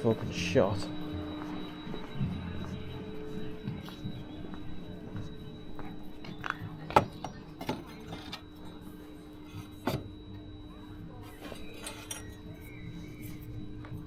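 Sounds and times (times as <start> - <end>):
steady low hum: 0.0 - 14.0
metal tools knocking and clinking: 11.5 - 12.4.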